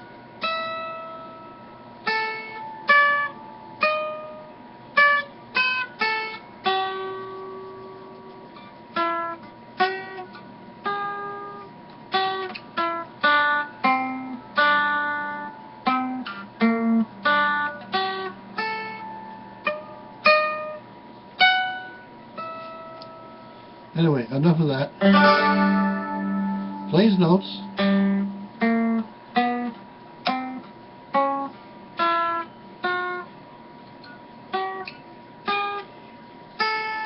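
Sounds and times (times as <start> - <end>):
mandolin slow picked melody: 25.0 - 29.6.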